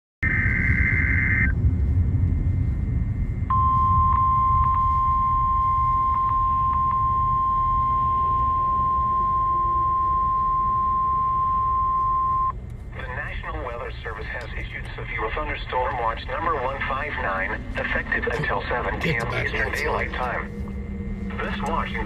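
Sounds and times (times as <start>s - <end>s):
low road rumble: 0.2s - 22.0s
steady high alert tone: 18.3s - 20.6s.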